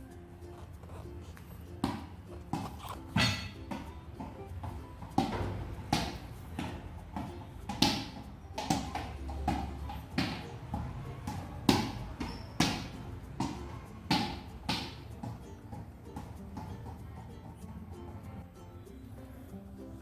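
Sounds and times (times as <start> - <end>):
ball bouncing on hard floor: 1.7 - 17.5.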